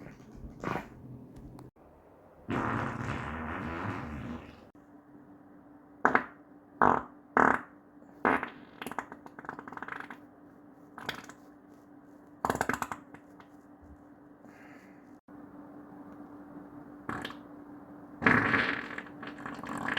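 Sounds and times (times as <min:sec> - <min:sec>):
person farting: 0:00.0 - 0:01.0, 0:02.5 - 0:04.7, 0:06.1 - 0:10.2, 0:18.2 - 0:19.9
faint steady hum: 0:00.0 - 0:19.9.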